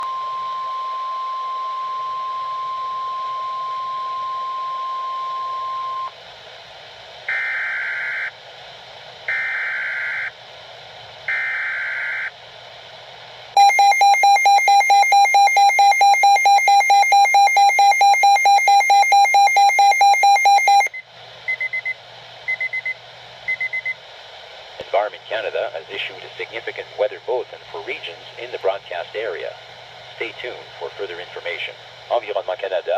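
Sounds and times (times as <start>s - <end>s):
electronic alarm beeping: 13.6s - 24.0s
steady attention tone: 13.6s - 24.0s.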